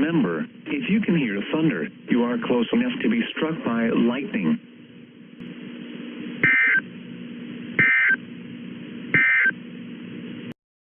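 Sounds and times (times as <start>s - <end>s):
faint steady hum: 0.0s - 10.6s
digital data tone bursts: 6.4s - 6.8s, 7.8s - 8.2s, 9.2s - 9.6s.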